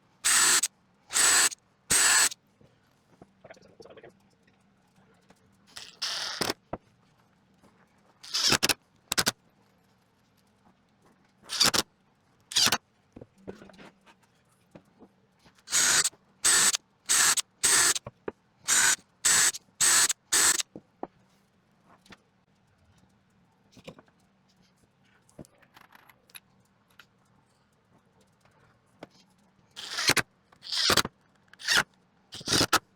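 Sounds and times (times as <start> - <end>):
pneumatic nail gun firing: 0.2 - 2.4, 8.3 - 9.3, 11.5 - 11.8, 12.5 - 12.8, 15.7 - 18.0, 18.7 - 20.6, 29.8 - 31.8, 32.4 - 32.8.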